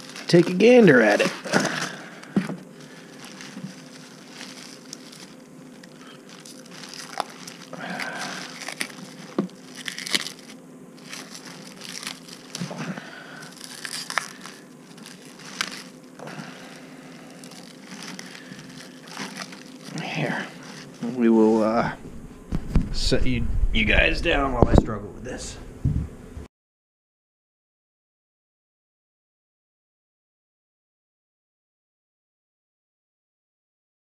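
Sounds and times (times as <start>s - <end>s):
packaging crinkling and rustling: 0.0s - 21.6s
faint steady hum: 0.0s - 26.5s.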